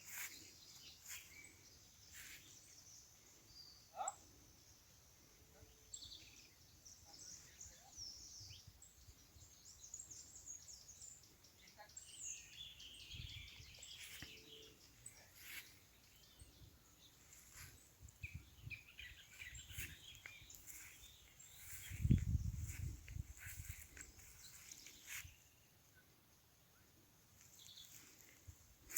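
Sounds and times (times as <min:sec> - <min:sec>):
birds chirping and twittering: 0:00.0 - 0:28.9.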